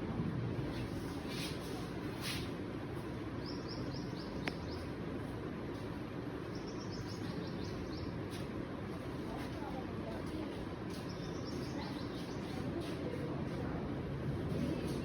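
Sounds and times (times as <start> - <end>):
steady background noise: 0.0 - 15.0
small bird chirping: 3.4 - 5.0, 6.4 - 8.4, 10.9 - 12.6.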